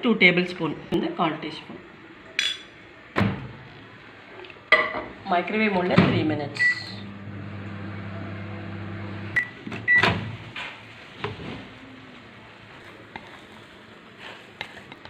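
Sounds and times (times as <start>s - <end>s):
microwave oven humming: 6.6s - 10.0s.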